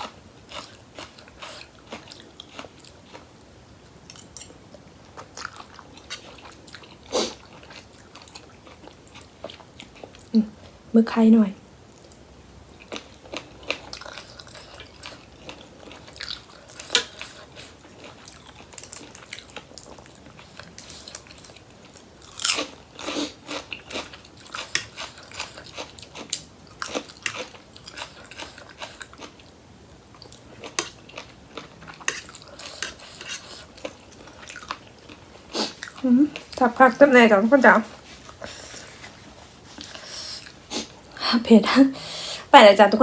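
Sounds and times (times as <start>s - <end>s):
person chewing and crunching: 0.0s - 3.4s, 5.1s - 10.3s, 12.0s - 36.6s.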